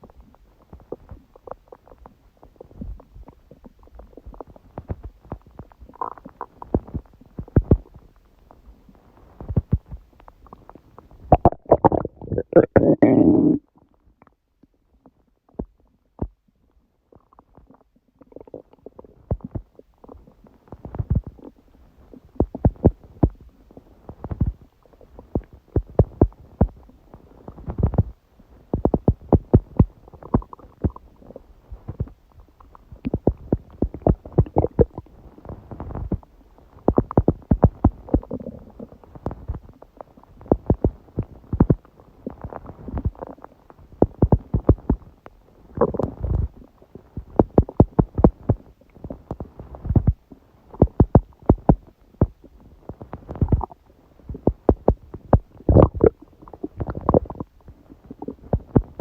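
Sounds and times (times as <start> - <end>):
stomach growling and gurgling: 0.0 - 59.0.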